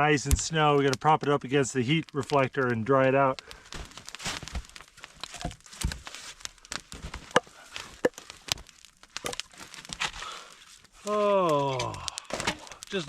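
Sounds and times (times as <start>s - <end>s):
ice crunching and crinkling: 0.0s - 13.0s.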